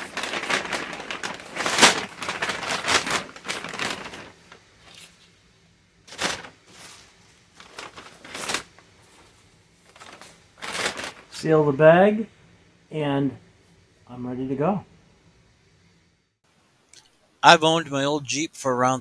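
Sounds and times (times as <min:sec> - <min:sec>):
paper bag crinkling: 0:00.0 - 0:05.0, 0:06.1 - 0:11.3.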